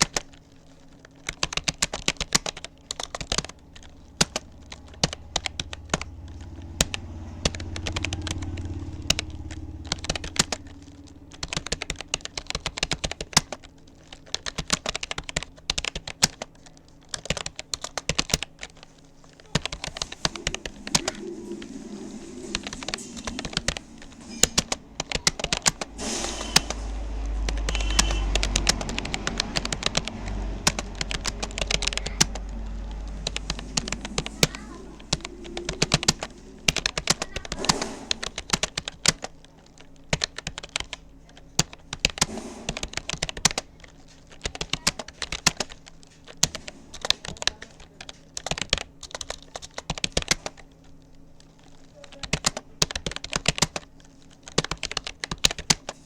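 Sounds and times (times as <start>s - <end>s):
keyboard typing clicks: 0.0s - 50.6s, 51.7s - 56.0s
low rumble: 0.7s - 17.1s, 18.6s - 44.6s.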